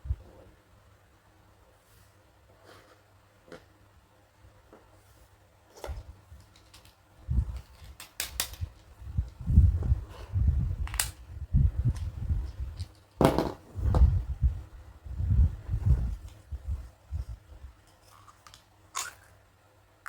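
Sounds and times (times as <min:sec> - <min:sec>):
plastic toy pieces clicking: 0:07.6 - 0:08.9, 0:18.2 - 0:19.3
dull bumps and rubbing: 0:13.2 - 0:14.3.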